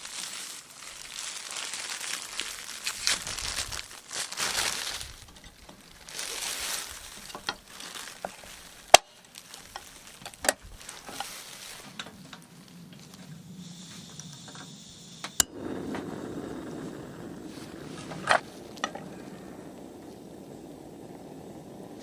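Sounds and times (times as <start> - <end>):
rustling and handling objects: 0.0 - 14.2.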